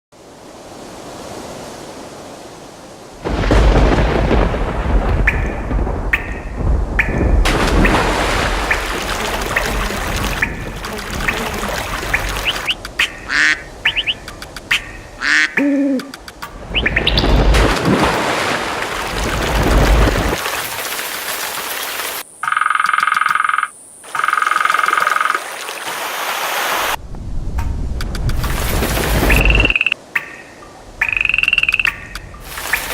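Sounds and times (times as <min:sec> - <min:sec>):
running water rushing: 0:00.2 - 0:22.3, 0:24.1 - 0:27.1, 0:28.0 - 0:32.9
pulsing frog calls: 0:04.9 - 0:17.7, 0:22.3 - 0:25.4, 0:29.2 - 0:32.9
bird chirps and calls: 0:12.0 - 0:17.4, 0:29.4 - 0:32.9.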